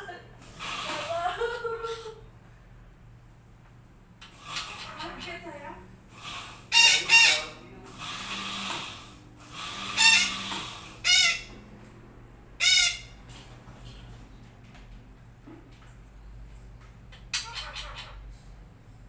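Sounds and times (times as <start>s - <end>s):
parakeet squawking: 4.4s - 11.5s, 12.6s - 13.2s, 17.1s - 18.3s.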